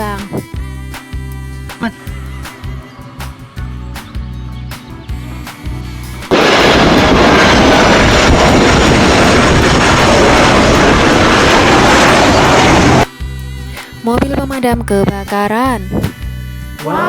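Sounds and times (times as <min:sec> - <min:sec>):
background music: 0:00.0 - 0:07.4, 0:10.6 - 0:17.0
jet airplane roar: 0:02.0 - 0:13.1.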